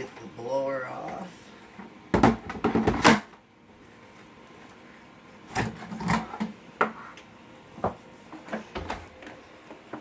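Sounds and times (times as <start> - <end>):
knocks and clunks of plastic parts: 2.1 - 3.4.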